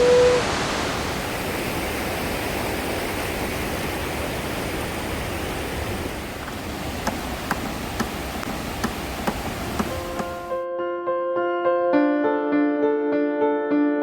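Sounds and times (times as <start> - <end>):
waterfall roaring: 0.0 - 10.5.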